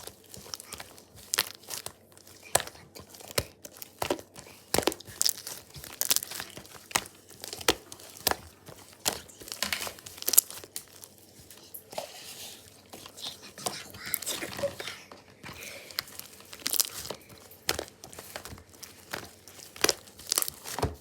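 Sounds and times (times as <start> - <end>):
paper crinkling and rustling: 0.0 - 21.0.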